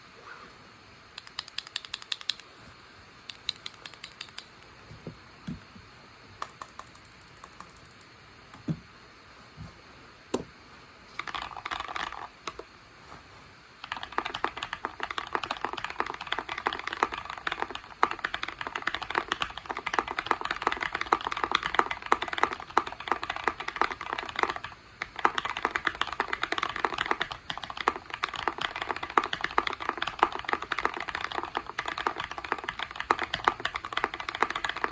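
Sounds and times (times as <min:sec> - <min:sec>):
mechanical keyboard typing: 0:01.2 - 0:02.5, 0:03.3 - 0:04.7, 0:06.4 - 0:08.1, 0:11.2 - 0:12.6, 0:13.8 - 0:34.9.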